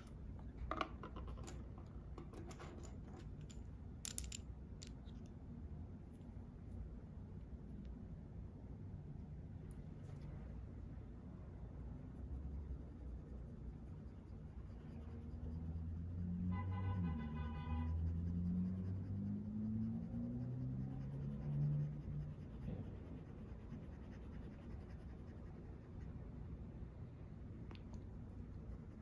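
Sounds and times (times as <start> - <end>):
makeup rubbing scratchily: 17.6 - 26.1.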